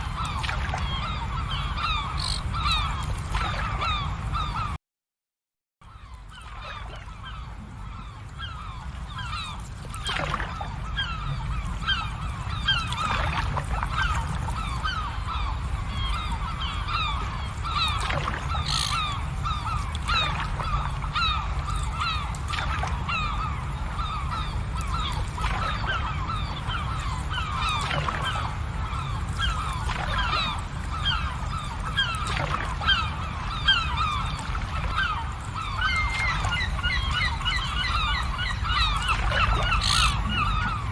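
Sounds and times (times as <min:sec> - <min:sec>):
flock of birds honking: 0:23.0 - 0:40.9.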